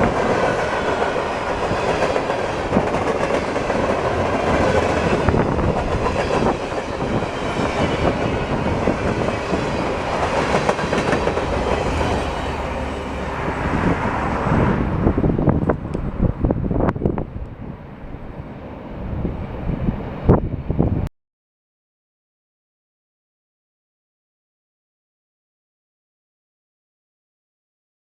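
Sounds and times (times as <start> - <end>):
sharp clicks of train cars: 0.0 - 8.3, 9.1 - 14.6
train wheels clacking over rail joints: 0.0 - 14.5.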